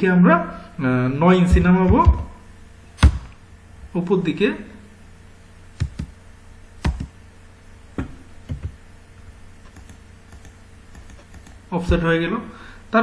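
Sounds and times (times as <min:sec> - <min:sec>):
keyboard and mouse clicks: 0:05.8 - 0:06.2, 0:06.8 - 0:07.2, 0:08.0 - 0:08.8, 0:09.7 - 0:11.6.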